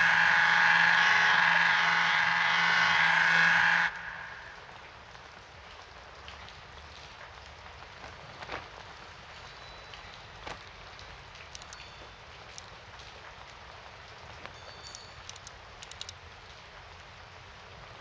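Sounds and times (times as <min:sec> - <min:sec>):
loud hum with high whine: 0:00.0 - 0:05.0
rain on hard surfaces: 0:03.9 - 0:18.0.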